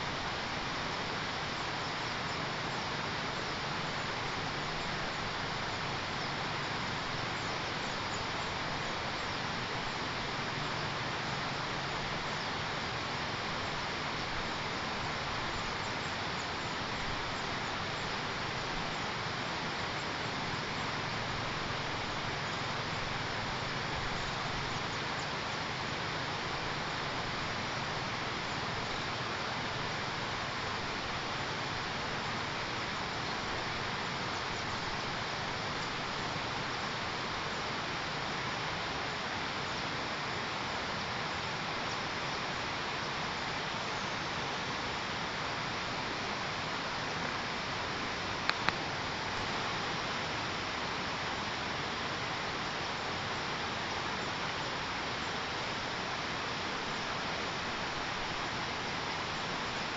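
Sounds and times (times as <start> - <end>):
outdoor background hiss: 0.0 - 59.9.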